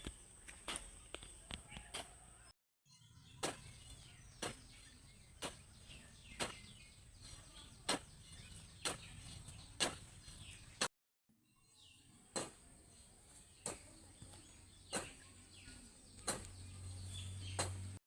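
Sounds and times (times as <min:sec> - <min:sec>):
hand tool striking: 0:14.9 - 0:15.2, 0:16.2 - 0:16.6, 0:17.5 - 0:18.0.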